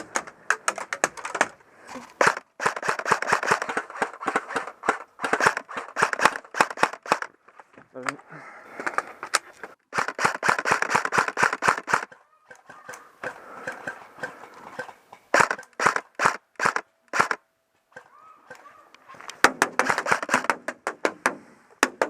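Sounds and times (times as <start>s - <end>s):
airsoft rifle shots: 2.2s - 7.3s, 9.9s - 12.9s, 13.6s - 17.4s, 19.4s - 20.7s.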